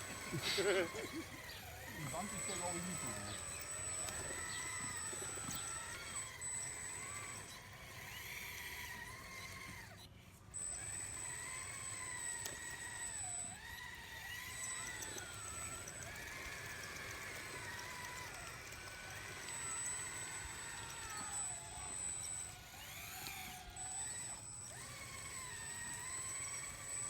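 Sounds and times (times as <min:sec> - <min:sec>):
electric motors whining: 0:00.0 - 0:27.0.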